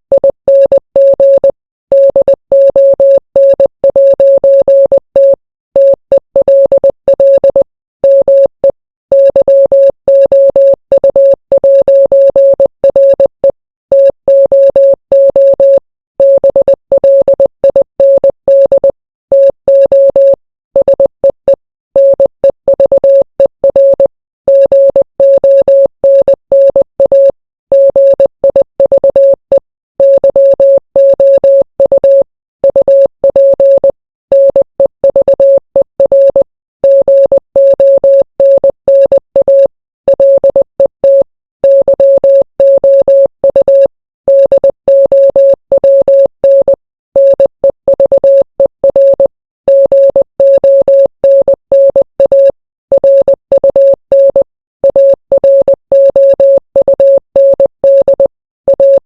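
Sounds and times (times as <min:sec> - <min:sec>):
morse code beeps: 0:00.1 - 0:59.0.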